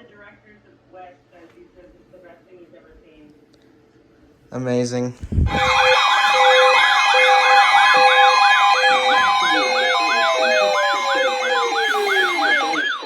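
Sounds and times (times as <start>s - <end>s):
electronic siren yelp: 5.5s - 13.0s
steady electronic tones: 5.5s - 13.0s
tone sliding down in pitch: 5.5s - 13.0s.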